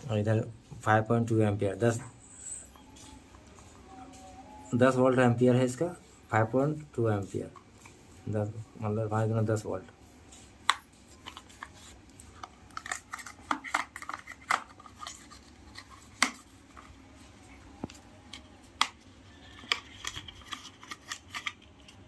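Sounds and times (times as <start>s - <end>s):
packaging clicks and crinkling: 10.7s - 17.0s, 17.8s - 22.0s.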